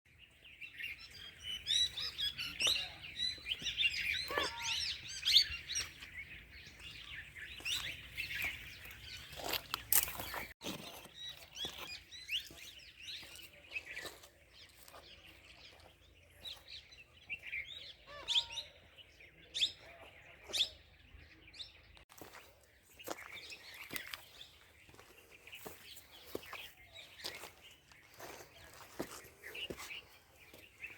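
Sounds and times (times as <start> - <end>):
wild birds singing and chirping: 0.1 - 30.9.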